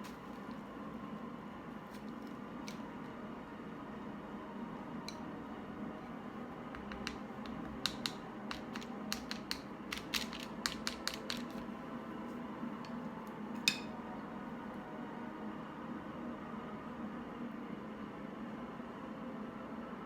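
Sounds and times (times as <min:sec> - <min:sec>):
steady low hum: 0:00.0 - 0:20.0
light clicks and taps: 0:06.7 - 0:11.6.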